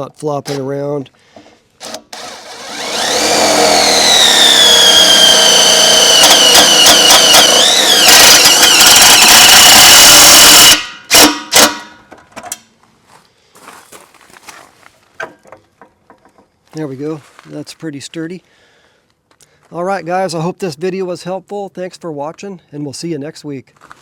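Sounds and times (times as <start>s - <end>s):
power drill driving a screw: 1.8s - 11.9s.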